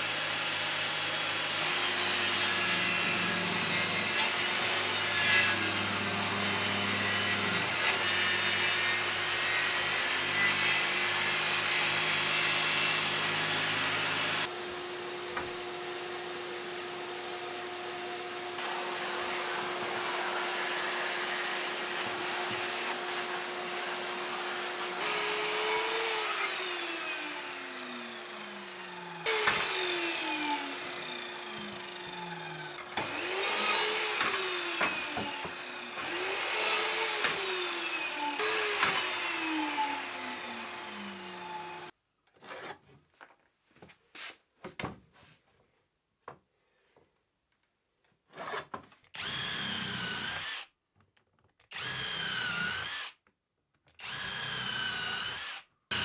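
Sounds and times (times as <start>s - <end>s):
small power tool whine: 10.8s - 41.9s, 49.2s - 50.7s, 51.7s - 53.2s, 54.0s - 56.0s.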